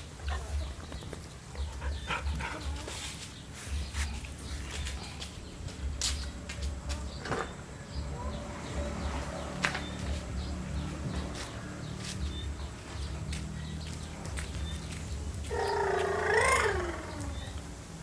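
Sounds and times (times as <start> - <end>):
faint bird chirps: 15.5 - 17.6.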